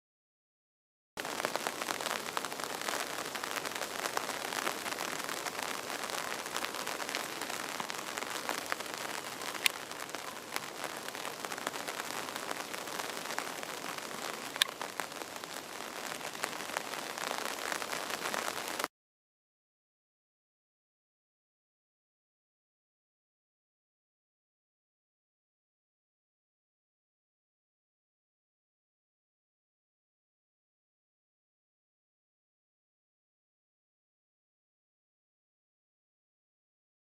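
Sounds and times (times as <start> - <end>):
steady rain falling: 1.2 - 18.9.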